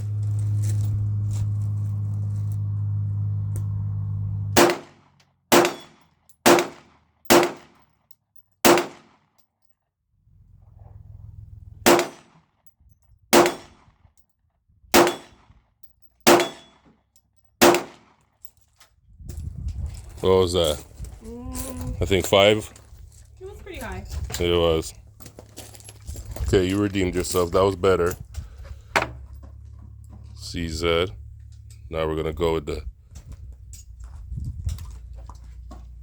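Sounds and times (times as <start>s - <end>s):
steady low hum: 0.0s - 4.9s
handgun shots: 4.6s - 7.8s, 8.6s - 9.2s, 11.9s - 12.4s, 13.4s - 13.8s, 15.0s - 15.4s, 16.3s - 16.8s, 17.6s - 18.1s.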